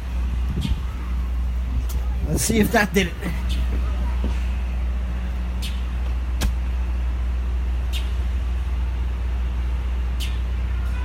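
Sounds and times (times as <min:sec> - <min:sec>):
vehicle engine idling: 0:00.0 - 0:11.0.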